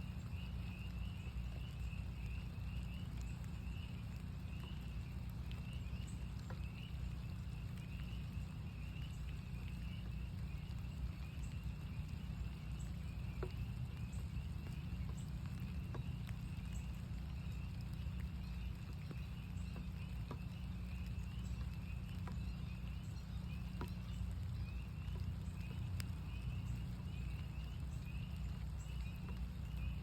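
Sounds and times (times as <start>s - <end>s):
drops ticking: 0.0s - 30.0s
frogs peeping chorus: 0.0s - 30.0s
rain falling: 0.0s - 30.0s.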